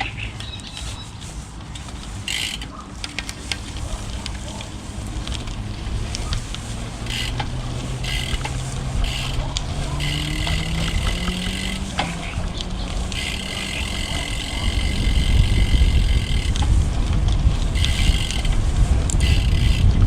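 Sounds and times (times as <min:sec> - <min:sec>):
steady low rumble: 0:03.4 - 0:20.0
vehicle engine revving up: 0:04.4 - 0:16.5.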